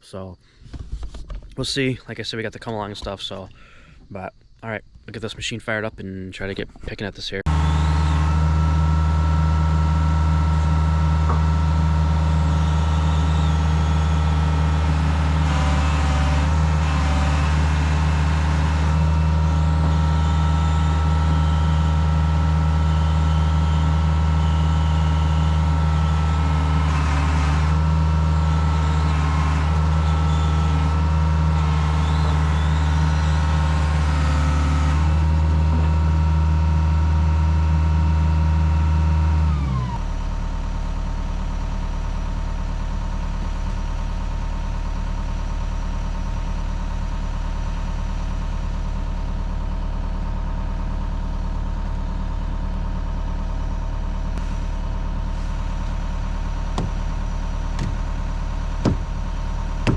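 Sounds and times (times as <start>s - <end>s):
machine working noise: 7.5s - 40.1s, 54.4s - 59.9s
heavy diesel engine running: 7.5s - 59.9s.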